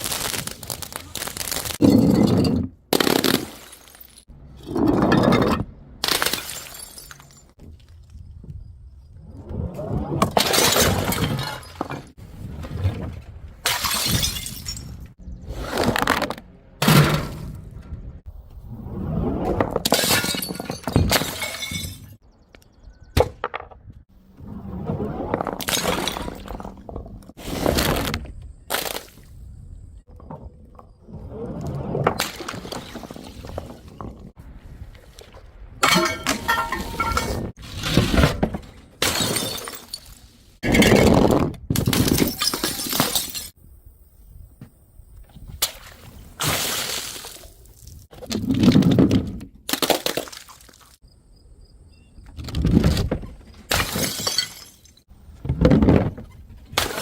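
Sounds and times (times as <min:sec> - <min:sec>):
glass bottles smashing: 0:01.4 - 0:07.6, 0:10.4 - 0:12.2, 0:13.7 - 0:15.0, 0:19.9 - 0:22.2, 0:35.8 - 0:37.5, 0:39.0 - 0:41.2, 0:41.8 - 0:43.6, 0:53.7 - 0:55.1.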